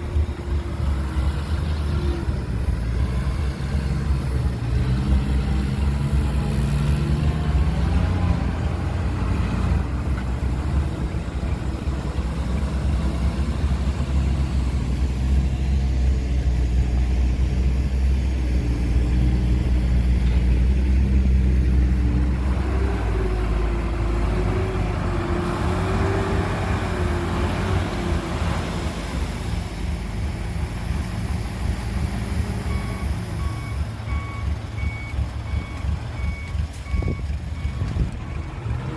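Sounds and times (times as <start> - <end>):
heavy diesel machinery running: 0.0 - 38.9
reversing alarm beeping: 32.6 - 38.7.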